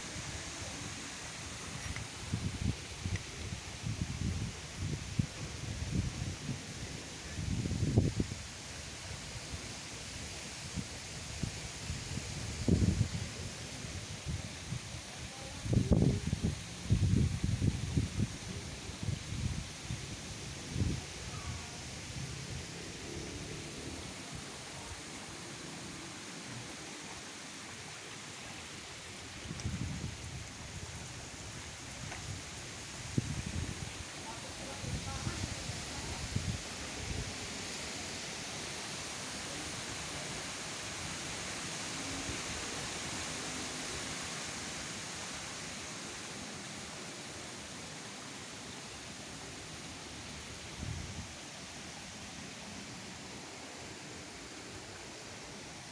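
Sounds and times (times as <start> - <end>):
wind buffeting microphone: 15.6 - 24.0, 29.5 - 37.5.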